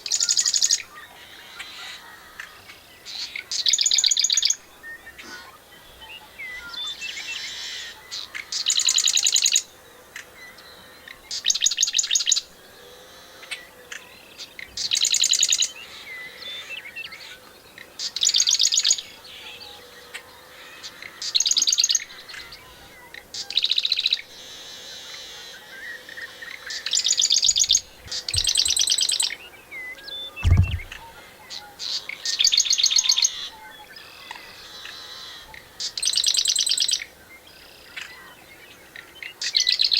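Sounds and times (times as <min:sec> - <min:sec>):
bird singing a rattling trill: 0:20.7 - 0:39.9
low thump: 0:28.1 - 0:28.8, 0:30.4 - 0:31.0.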